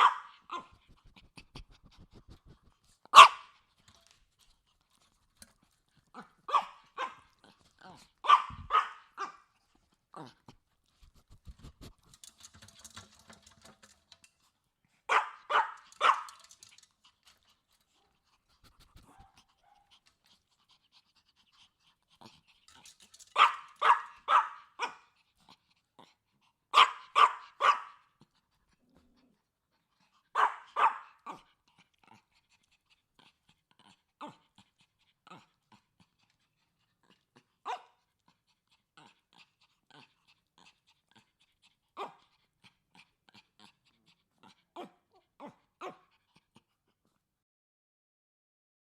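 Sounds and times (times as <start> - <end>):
dog barking: 0.0 - 0.7, 3.2 - 3.5, 6.5 - 7.2, 8.2 - 9.4, 15.1 - 16.4, 23.4 - 25.0, 26.7 - 28.0, 30.4 - 31.4.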